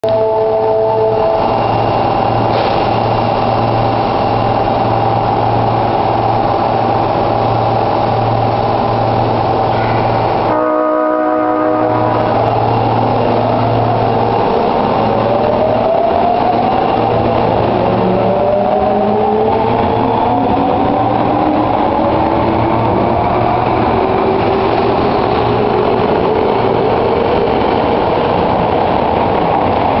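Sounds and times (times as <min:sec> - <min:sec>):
train humming: 0:00.0 - 0:30.0
short buzzy train horn: 0:10.5 - 0:12.4.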